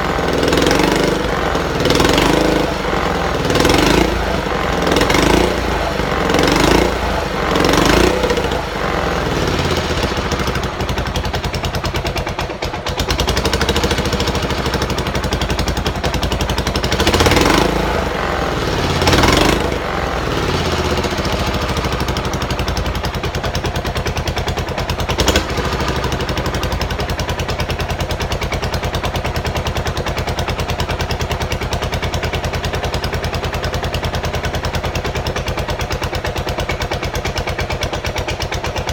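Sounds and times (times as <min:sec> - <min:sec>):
motorcycle engine idling: 0:00.0 - 0:38.9
motorcycle engine throttle blips: 0:00.0 - 0:38.9.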